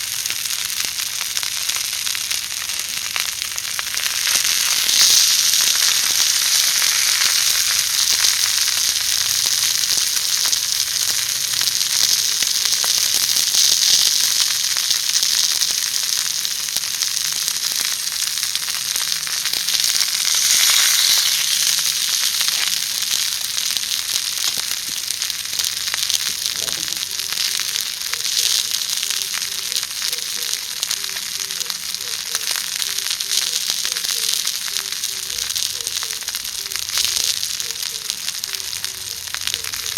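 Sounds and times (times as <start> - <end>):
rice balls sizzling in frying: 0.0 - 39.9.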